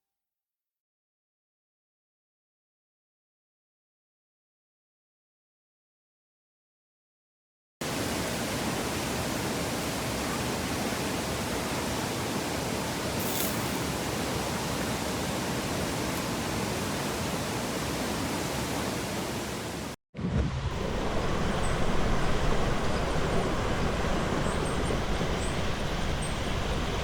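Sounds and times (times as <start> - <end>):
river rapids rushing: 7.8 - 20.0.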